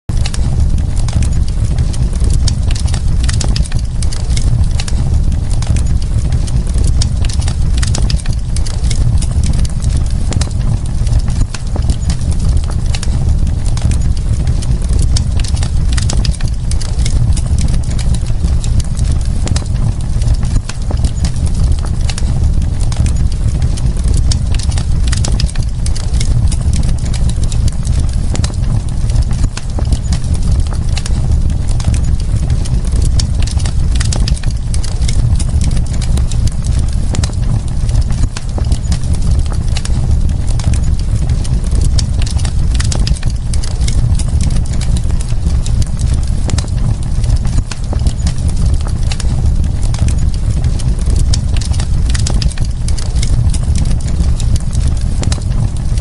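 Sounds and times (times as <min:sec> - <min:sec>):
low rumble: 0:00.1 - 0:56.0
wood fire crackling: 0:00.1 - 0:56.0.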